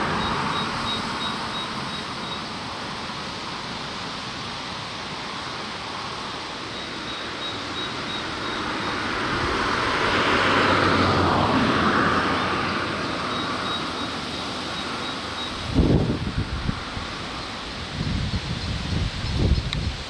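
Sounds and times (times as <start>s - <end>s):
distant vehicle passing by: 6.7s - 17.5s.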